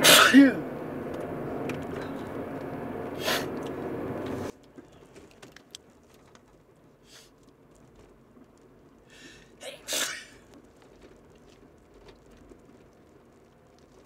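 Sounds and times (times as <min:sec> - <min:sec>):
car cabin noise: 0:00.0 - 0:05.4.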